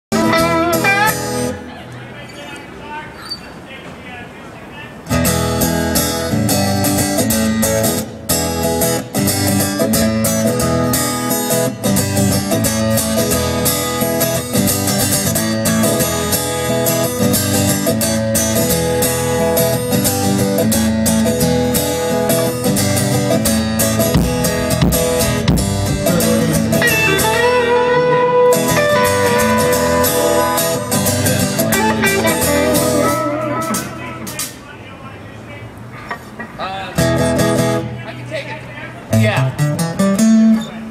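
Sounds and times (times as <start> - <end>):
live band playing: 0.0 - 2.0, 5.1 - 34.6
lead guitar bending notes: 0.1 - 2.2, 5.1 - 34.6.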